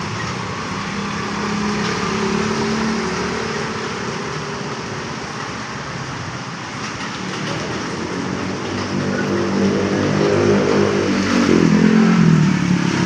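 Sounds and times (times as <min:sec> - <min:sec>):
vehicle engine passing by: 0:07.2 - 0:13.0.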